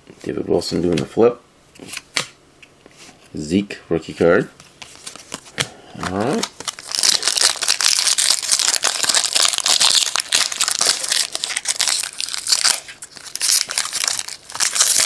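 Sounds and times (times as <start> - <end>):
foil wrapper crinkling and tearing: 6.1 - 15.0.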